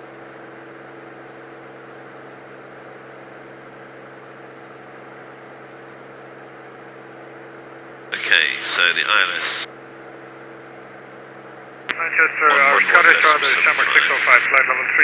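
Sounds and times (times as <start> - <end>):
aircraft engine and propeller drone: 0.0 - 15.0
headset intercom hiss: 8.2 - 9.7, 11.9 - 15.0.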